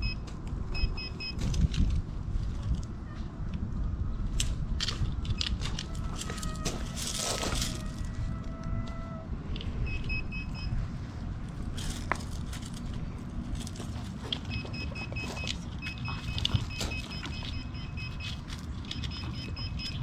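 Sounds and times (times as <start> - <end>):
wind rumble on microphone: 0.1 - 13.9
metal detector beeping rapidly: 0.8 - 1.4, 9.8 - 10.8, 14.3 - 20.0.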